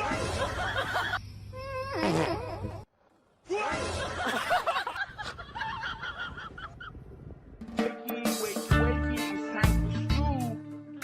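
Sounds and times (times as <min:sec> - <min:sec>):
people laughing: 0:00.0 - 0:01.2, 0:03.6 - 0:07.0.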